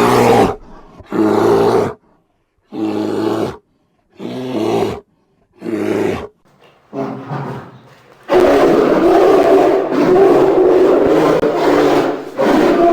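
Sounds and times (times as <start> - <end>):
bear roaring: 0.0 - 2.0, 5.6 - 12.9.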